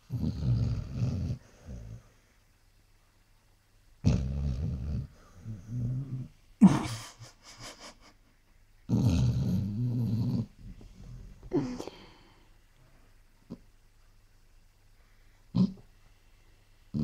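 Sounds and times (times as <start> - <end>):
dog snoring: 0.0 - 2.1, 4.0 - 6.3, 8.9 - 10.5, 15.5 - 15.8.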